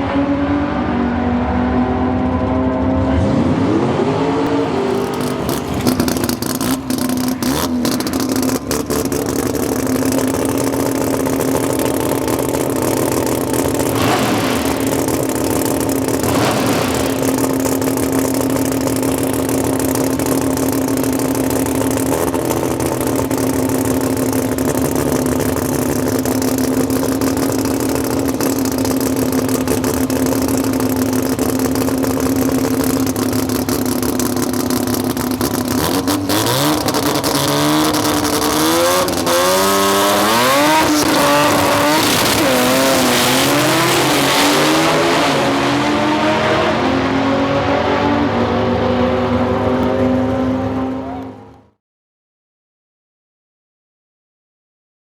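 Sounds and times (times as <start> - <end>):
race car engine running: 0.0 - 51.8
sharp cracks: 13.8 - 19.0.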